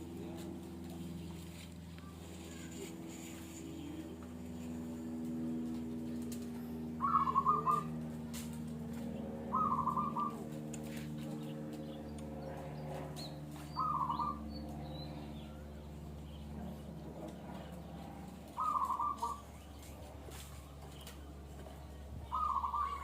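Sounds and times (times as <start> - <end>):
steady low hum: 0.0 - 23.0
bird trilled call: 7.0 - 7.9, 9.5 - 10.4, 13.7 - 14.4, 18.6 - 19.5, 22.3 - 23.0.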